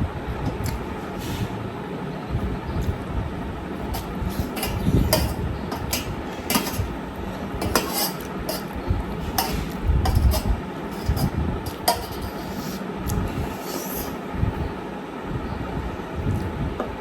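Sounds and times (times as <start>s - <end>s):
metal spoon clinking on plate: 4.0s - 6.9s, 7.6s - 8.8s, 9.4s - 12.7s.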